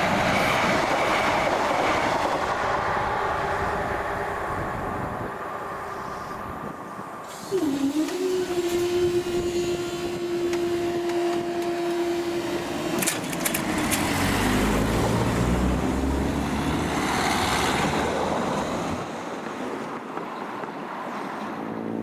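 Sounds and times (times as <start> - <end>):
wheels clicking on rail joints: 7.2 - 15.5
train horn: 7.5 - 12.8.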